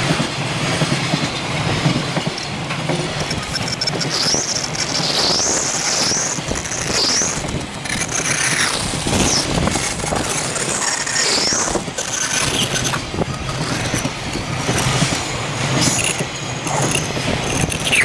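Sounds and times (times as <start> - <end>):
train wheels clattering on rails: 0.0 - 18.0
high wheel squeals: 0.2 - 13.2.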